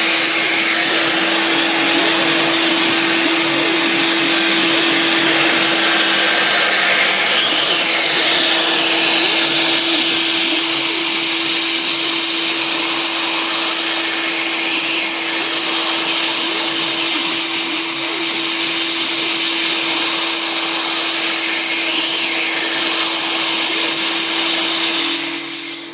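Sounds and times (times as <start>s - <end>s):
cutter milling wood: 0.0s - 25.9s
mill spindle whine: 0.0s - 25.9s.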